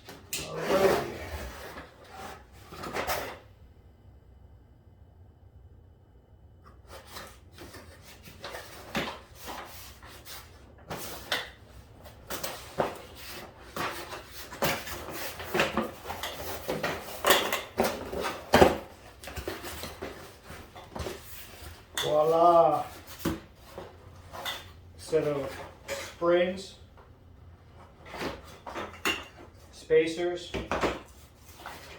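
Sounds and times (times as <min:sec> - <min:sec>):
parts scraping and clacking: 0:12.3 - 0:26.4.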